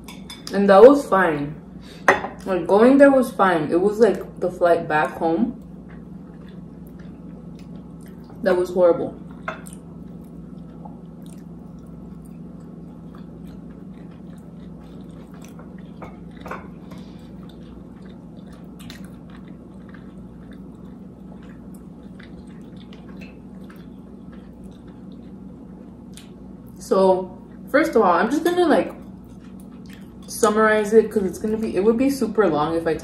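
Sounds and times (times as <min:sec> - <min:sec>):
steady low hum: 0:00.0 - 0:33.0
person chewing: 0:05.6 - 0:08.4, 0:09.3 - 0:26.8, 0:29.0 - 0:30.3.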